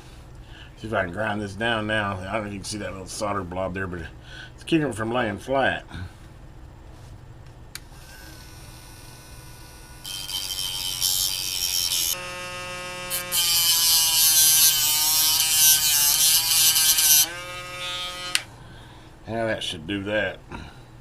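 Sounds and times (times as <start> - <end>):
rotary tool grinding whine: 7.9 - 18.5.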